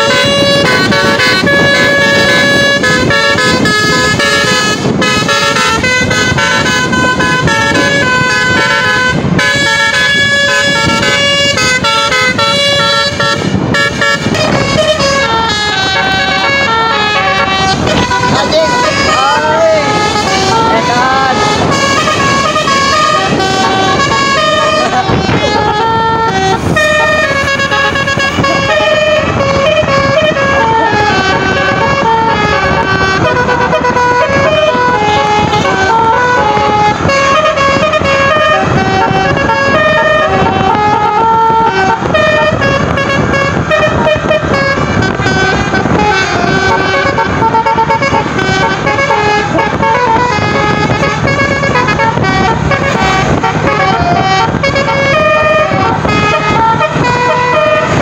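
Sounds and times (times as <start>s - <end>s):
bus horn playing a melody: 0.0s - 58.0s.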